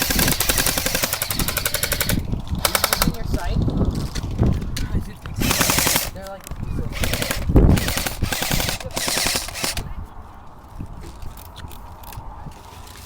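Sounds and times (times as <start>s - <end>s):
airsoft guns firing: 0.0s - 3.2s, 5.4s - 6.2s, 6.9s - 9.9s.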